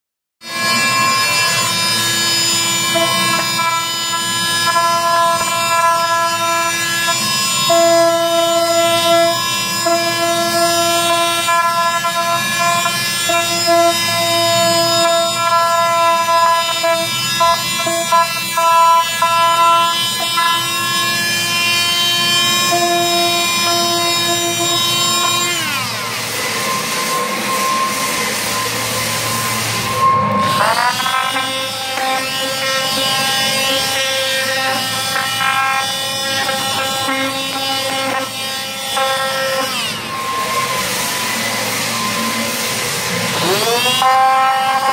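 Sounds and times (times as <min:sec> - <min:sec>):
electric sander whining: 0:00.4 - 0:44.9.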